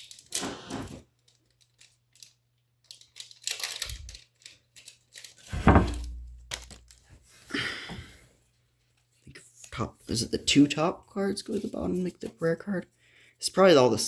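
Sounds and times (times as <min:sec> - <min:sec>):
card pack crinkling and tearing: 0:00.0 - 0:05.5
handling rustles and clicks: 0:01.2 - 0:07.3
thump with low rumble: 0:05.6 - 0:06.5.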